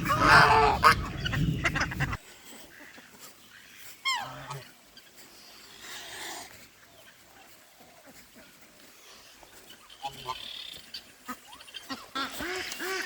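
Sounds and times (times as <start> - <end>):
waterfowl calling: 0.0 - 4.8, 9.8 - 13.0.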